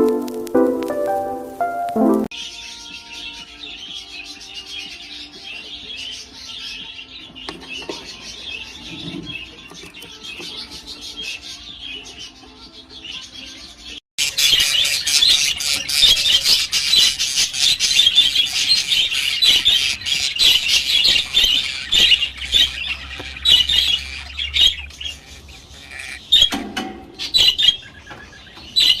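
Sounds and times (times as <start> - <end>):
budgerigars chattering: 14.2 - 26.6, 27.2 - 29.0.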